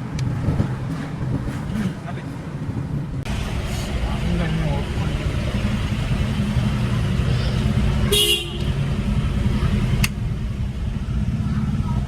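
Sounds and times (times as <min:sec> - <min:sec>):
car rumbling on the move: 0:00.0 - 0:12.0
car horn toot: 0:08.0 - 0:08.8.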